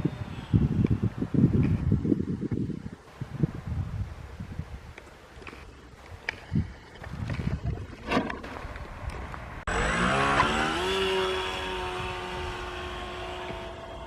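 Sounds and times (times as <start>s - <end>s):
electric motor and propeller whine: 0.0s - 2.0s, 9.5s - 14.0s.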